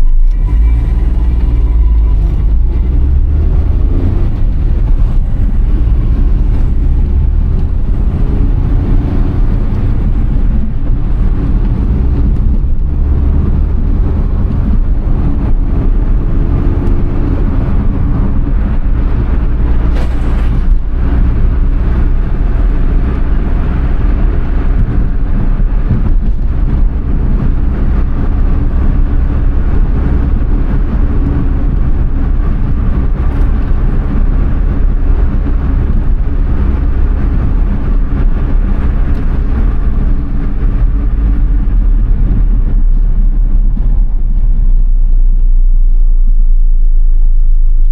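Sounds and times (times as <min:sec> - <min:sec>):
small car engine running: 0:00.0 - 0:44.5
road and tyre noise: 0:00.0 - 0:47.9
short sharp noise: 0:19.8 - 0:21.3.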